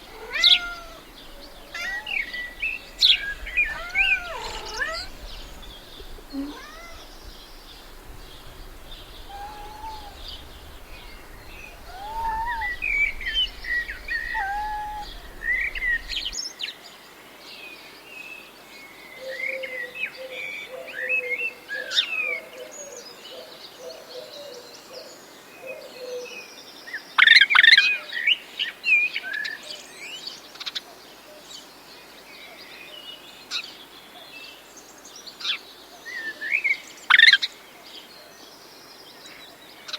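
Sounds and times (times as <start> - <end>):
birds chirping and whistling: 0.0 - 16.4
low rippling bird notes: 0.0 - 16.4.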